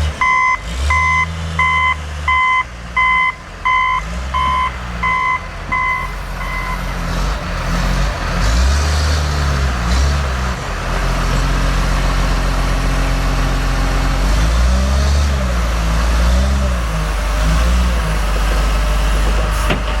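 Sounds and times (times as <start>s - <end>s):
diesel engine revving: 0.0s - 20.0s
reverse alarm beeping: 0.2s - 6.9s.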